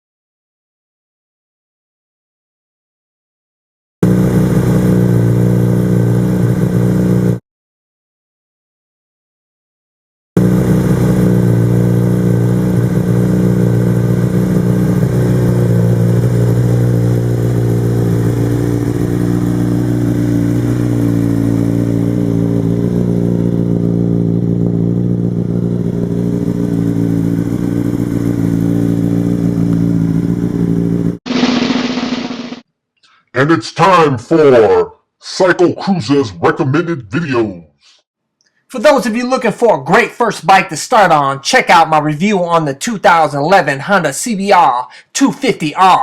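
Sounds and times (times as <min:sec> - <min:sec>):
motorcycle engine idling: 0:04.0 - 0:07.4, 0:10.4 - 0:32.6.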